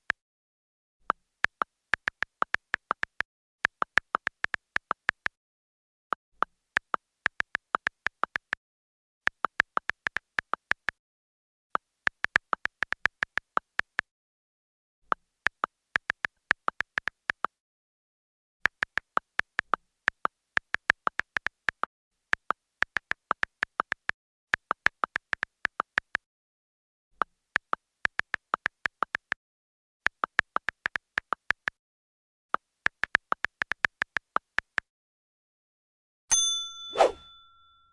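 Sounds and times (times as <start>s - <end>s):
smartphone keyboard tapping: 1.1s - 5.4s, 6.8s - 8.6s, 18.7s - 26.2s, 27.6s - 29.4s, 30.1s - 31.7s, 32.9s - 34.9s.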